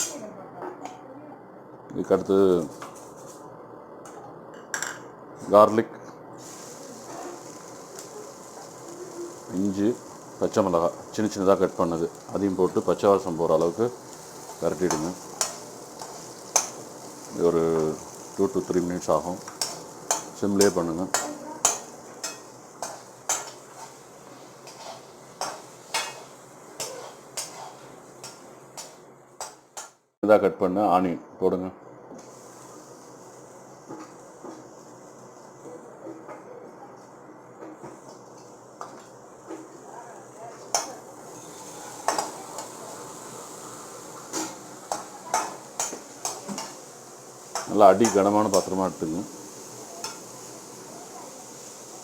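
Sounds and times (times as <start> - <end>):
faint sizzle of frying: 0.0 - 30.1, 30.8 - 52.0
spoon scraping frying pan: 14.0 - 18.4, 19.4 - 29.9, 40.6 - 43.0, 44.1 - 48.8.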